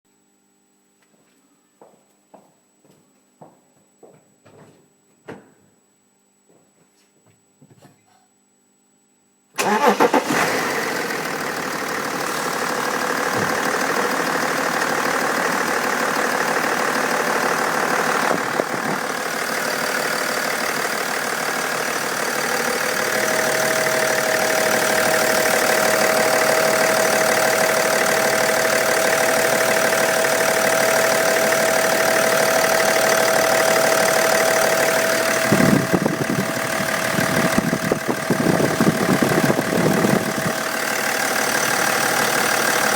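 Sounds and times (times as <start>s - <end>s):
car engine starting and idling: 9.6s - 42.9s.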